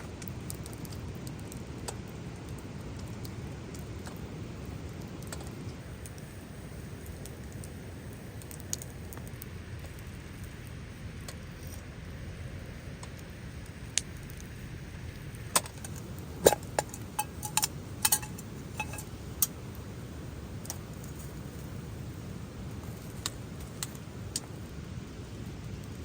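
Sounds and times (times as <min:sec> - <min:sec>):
low background hiss: 0:00.0 - 0:26.0
hard items clinking together: 0:15.6 - 0:19.1.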